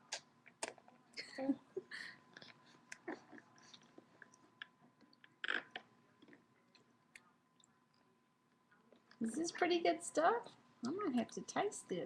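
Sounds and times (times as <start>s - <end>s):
baby mouth smacks: 0.1s - 0.9s.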